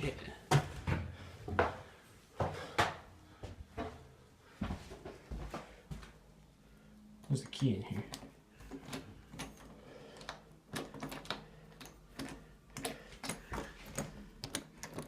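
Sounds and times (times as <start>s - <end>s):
sharp clicks and light knocks: 7.2s - 15.0s.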